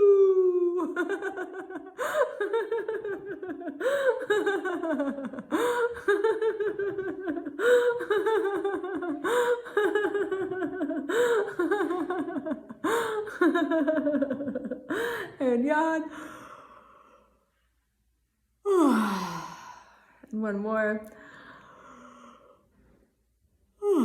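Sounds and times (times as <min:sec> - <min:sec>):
woman laughing heartily: 0:00.4 - 0:15.4
gasping in-breath: 0:18.7 - 0:20.3.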